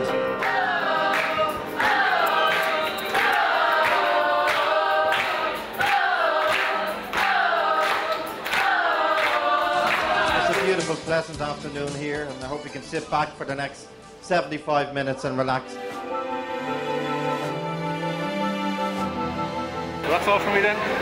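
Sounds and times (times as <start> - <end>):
group of voices singing: 0.0 - 11.2.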